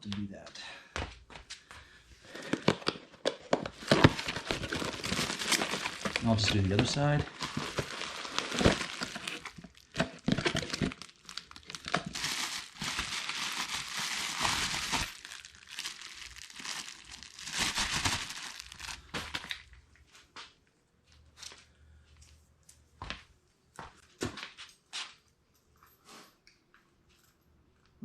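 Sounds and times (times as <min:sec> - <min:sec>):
packaging crinkling and rustling: 0:02.3 - 0:19.8.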